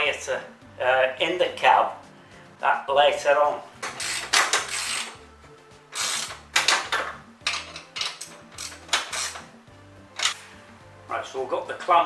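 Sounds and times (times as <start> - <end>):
ratchet spanner clicking: 3.8 - 5.2, 6.0 - 9.5.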